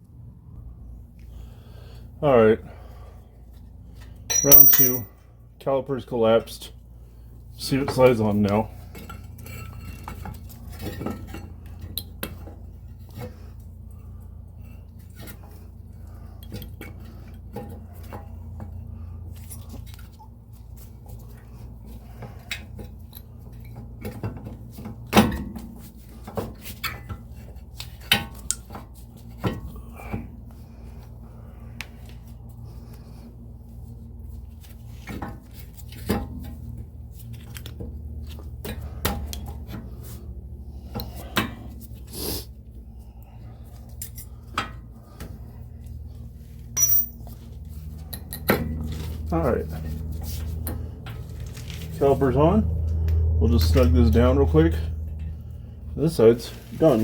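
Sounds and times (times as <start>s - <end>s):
metal clinks and knocks: 4.3s - 5.1s, 46.7s - 48.9s
steady low hum: 29.0s - 57.0s.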